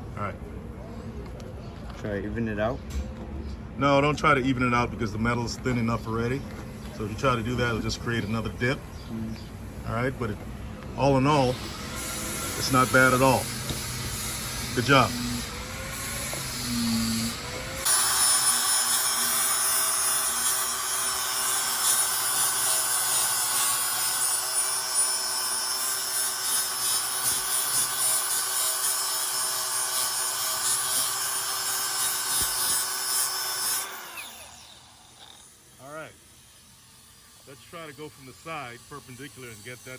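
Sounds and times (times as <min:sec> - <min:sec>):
angle grinder grinding metal: 0:11.1 - 0:39.9.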